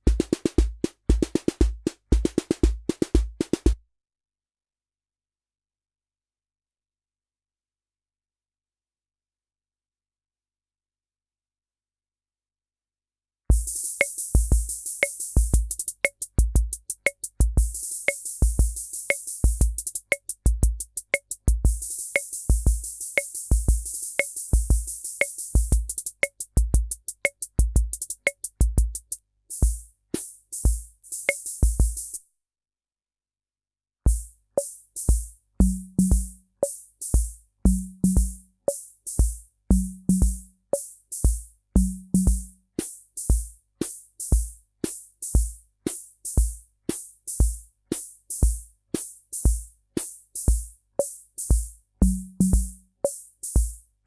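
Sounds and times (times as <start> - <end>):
pitched low drum: 0.0 - 3.8, 35.6 - 36.4, 41.8 - 42.6, 52.0 - 52.8
rhythm machine drum pattern: 0.0 - 3.8, 13.5 - 32.2, 34.1 - 53.9
hi-hat ticks: 13.5 - 32.2, 34.1 - 53.9.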